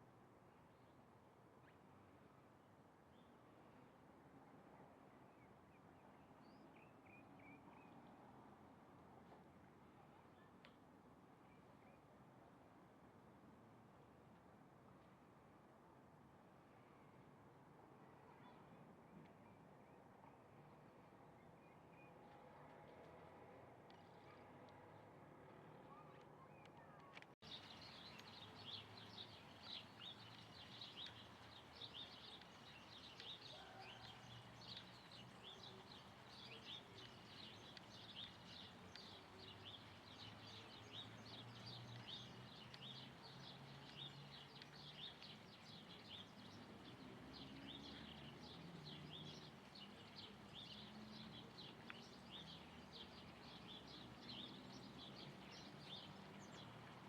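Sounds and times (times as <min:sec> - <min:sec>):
flock of small birds chirping: 0:27.4 - 0:57.0.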